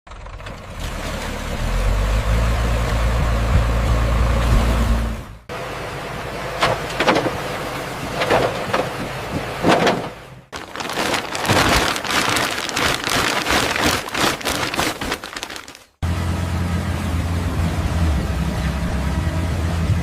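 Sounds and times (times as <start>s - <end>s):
dense crackling rushing noise: 10.6s - 16.0s
low motor drone: 16.0s - 20.0s.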